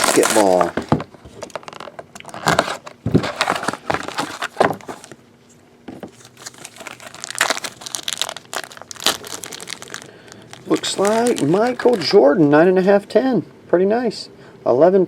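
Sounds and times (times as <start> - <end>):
packaging crinkling and tearing: 0.0 - 5.2, 6.1 - 12.2.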